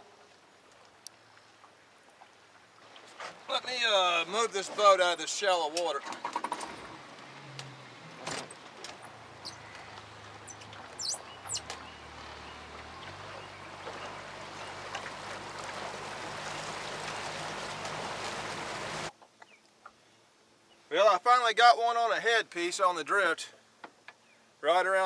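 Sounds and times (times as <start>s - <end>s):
boat motor running: 6.2s - 19.1s
bird chirps: 9.0s - 14.8s.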